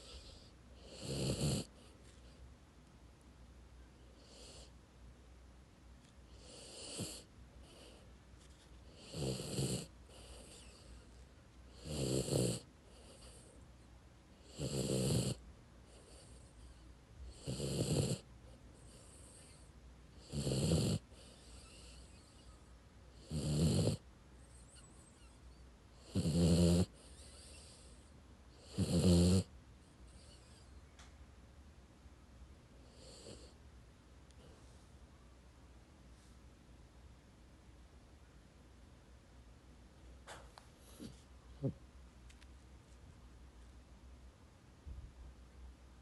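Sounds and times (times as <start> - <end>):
dog snoring: 0.0 - 2.2, 4.2 - 4.8, 6.3 - 8.0, 8.8 - 11.1, 11.7 - 13.6, 14.4 - 30.7, 32.8 - 33.6.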